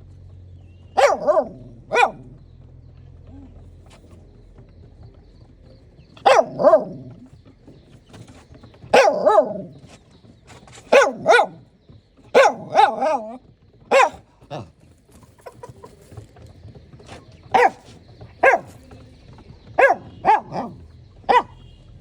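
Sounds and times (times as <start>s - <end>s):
dog barking: 1.0s - 2.4s, 6.2s - 7.2s, 8.9s - 9.9s, 10.9s - 11.7s, 12.3s - 14.7s, 17.5s - 18.9s, 19.8s - 21.8s.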